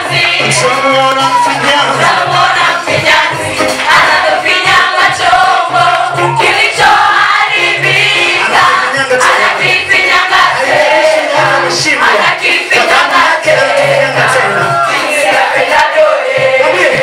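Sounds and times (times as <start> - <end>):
choir singing gospel song: 0.0 - 17.0.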